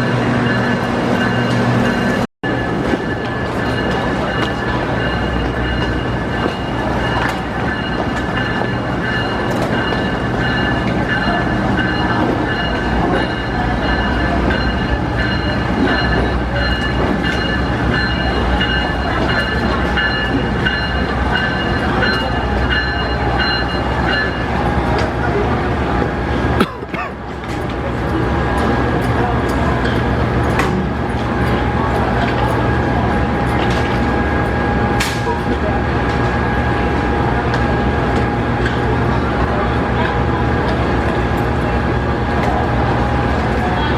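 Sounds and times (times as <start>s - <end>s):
train low rumble: 0.0s - 43.9s.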